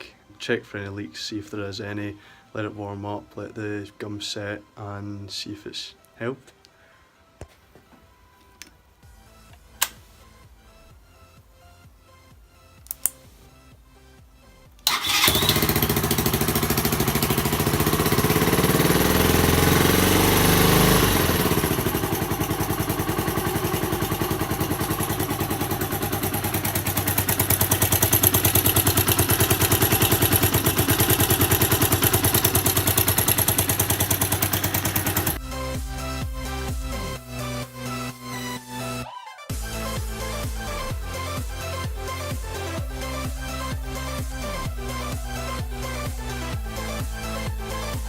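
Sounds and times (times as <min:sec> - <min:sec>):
motorcycle engine starting and idling: 0:14.8 - 0:35.4.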